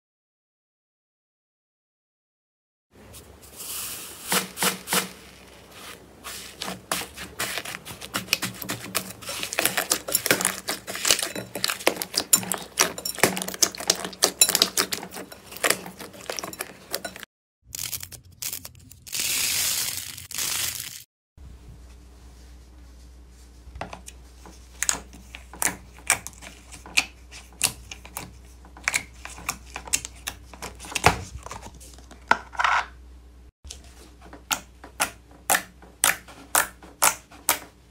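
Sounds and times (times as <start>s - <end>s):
low steady hum: 21.4s - 37.9s.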